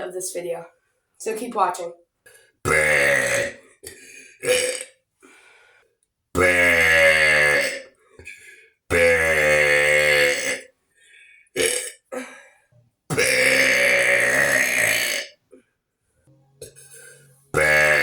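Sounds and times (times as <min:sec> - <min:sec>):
person burping loudly: 0:02.6 - 0:05.0, 0:06.4 - 0:10.7, 0:11.5 - 0:12.3, 0:13.1 - 0:15.4, 0:16.6 - 0:18.0.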